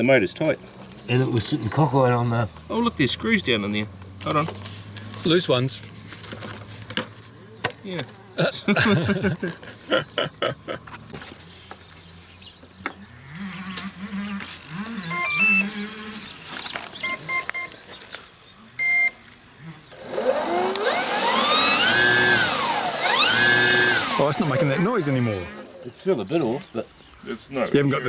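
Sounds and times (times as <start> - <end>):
electronic beeps: 15.0 - 15.8, 18.8 - 19.2
electric motor propeller whine: 19.9 - 25.8.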